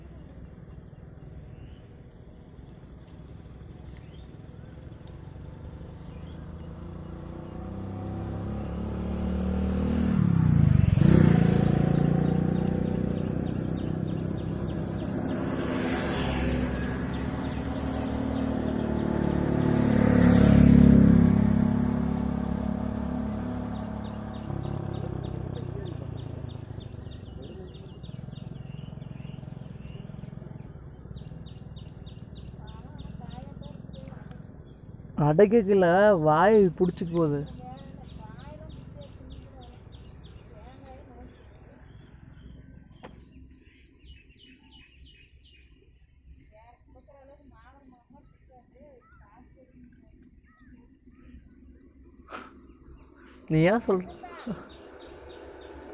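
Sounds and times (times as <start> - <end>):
road vehicles passing: 0.0 - 45.2, 51.1 - 55.9
faint high chirping: 36.7 - 55.9.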